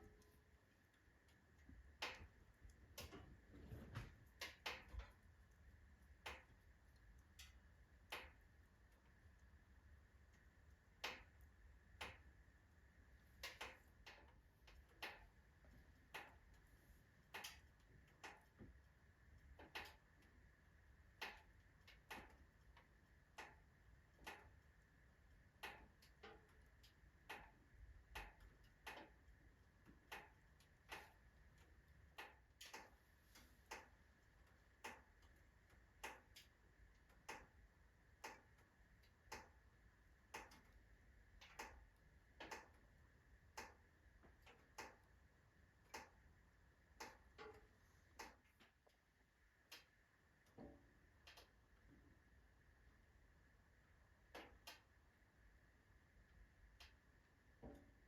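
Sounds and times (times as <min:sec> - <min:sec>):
logs crackling and popping in fire: 0:00.0 - 0:12.4, 0:13.3 - 0:16.6.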